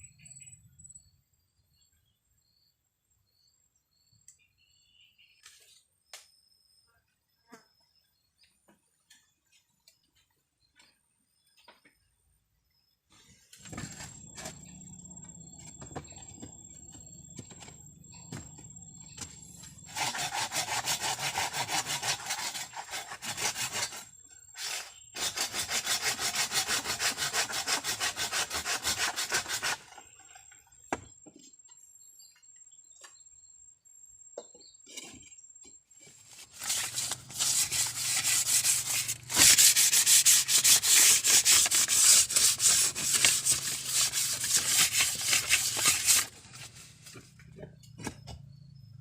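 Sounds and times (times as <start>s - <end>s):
hand saw cutting bamboo: 13.6s - 14.8s, 15.8s - 30.2s, 36.4s - 47.2s.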